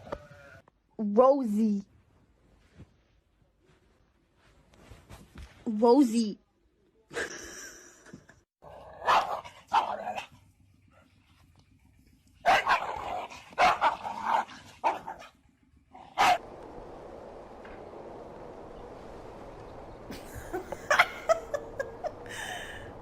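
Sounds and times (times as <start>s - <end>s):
dog barking: 9.0s - 10.3s, 12.4s - 15.3s, 16.1s - 16.4s.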